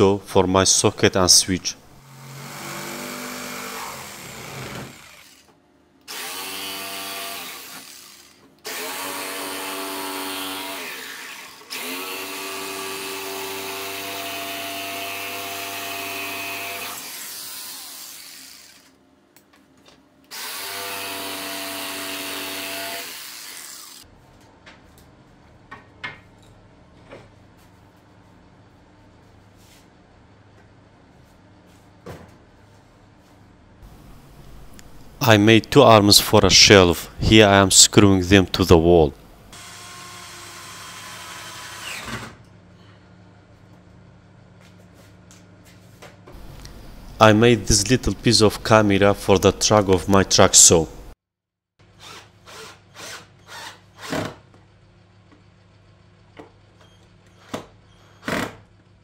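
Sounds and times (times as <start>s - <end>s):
jigsaw cutting wood: 2.0s - 5.5s, 6.1s - 18.9s, 20.3s - 24.0s, 39.5s - 42.4s, 52.0s - 54.4s.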